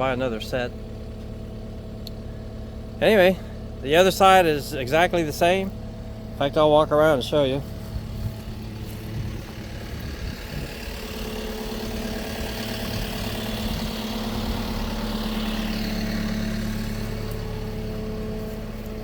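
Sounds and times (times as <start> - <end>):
engine idling: 0.0 - 19.0.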